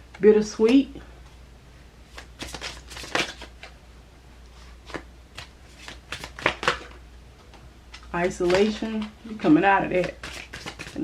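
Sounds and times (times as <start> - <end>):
cards being shuffled: 2.1 - 3.8, 4.6 - 7.0, 7.9 - 9.2, 9.8 - 11.0.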